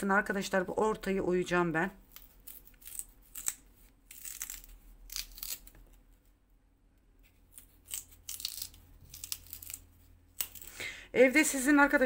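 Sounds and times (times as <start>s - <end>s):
utensil scraping radish flesh: 2.1s - 5.8s, 7.3s - 10.8s.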